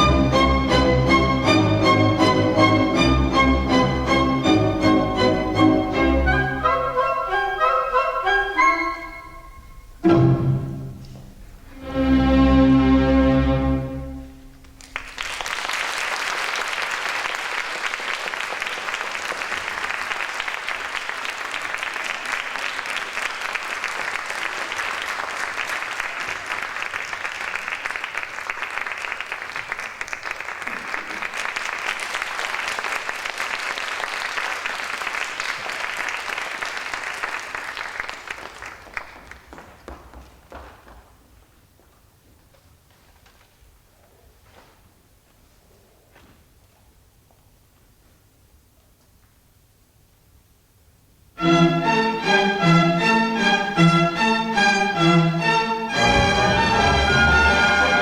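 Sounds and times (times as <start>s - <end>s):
audience applauding: 14.6s - 41.1s.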